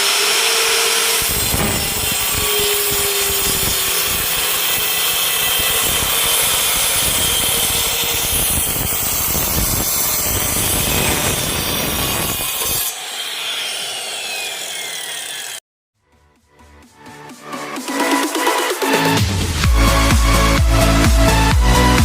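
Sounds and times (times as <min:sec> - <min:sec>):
circular saw cutting wood: 0:00.0 - 0:15.6
saw winding down whine: 0:00.0 - 0:15.6.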